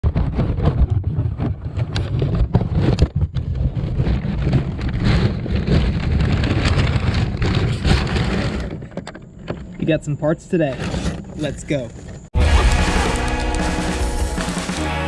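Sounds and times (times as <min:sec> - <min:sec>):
wind buffeting microphone: 0:00.0 - 0:09.7.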